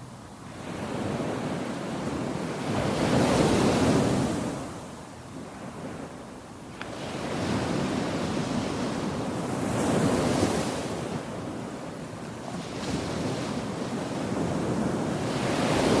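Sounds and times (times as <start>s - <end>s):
surf washing on a beach: 0.0s - 16.0s
wind buffeting microphone: 6.9s - 16.0s.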